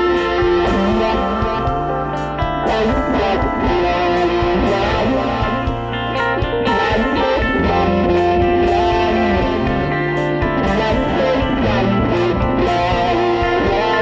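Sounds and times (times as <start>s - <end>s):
electric guitar background music: 0.0s - 14.0s.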